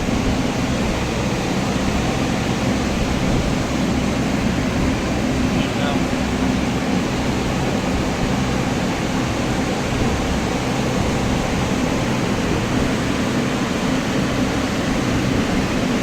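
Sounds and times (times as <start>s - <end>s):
engine idling: 0.0s - 16.0s.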